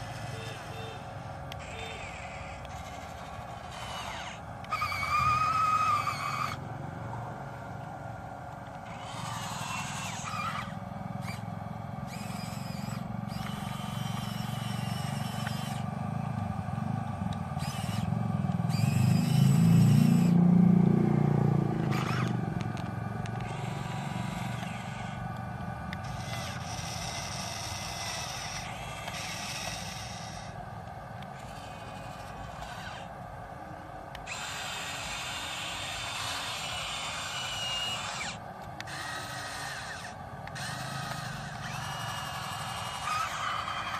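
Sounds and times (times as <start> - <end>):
steady low hum: 0.0 - 43.9
toy motors and gears whirring: 0.0 - 43.9.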